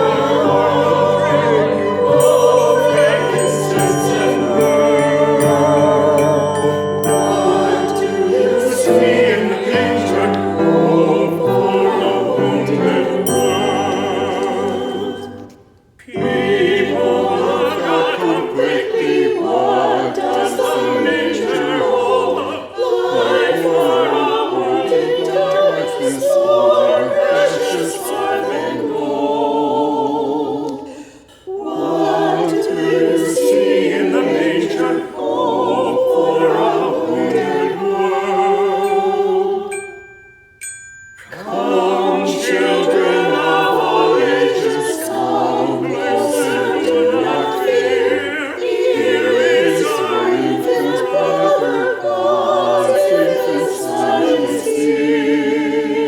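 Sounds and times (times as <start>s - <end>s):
choir singing: 0.0s - 40.2s, 41.2s - 56.0s.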